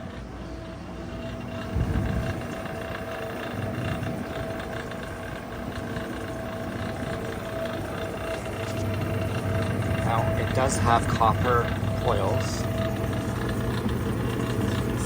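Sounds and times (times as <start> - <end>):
dehumidifier humming: 0.0 - 15.0.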